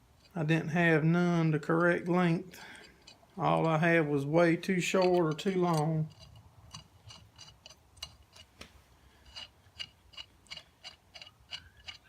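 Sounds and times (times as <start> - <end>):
ratchet wrench clicking: 5.0 - 8.5, 9.2 - 12.0.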